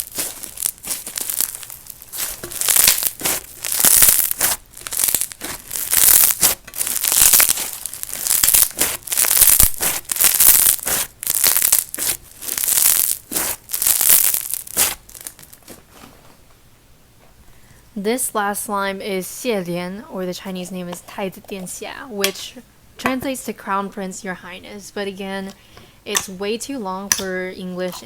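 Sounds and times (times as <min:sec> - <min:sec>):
crunchy slime crackling: 0:00.0 - 0:16.0.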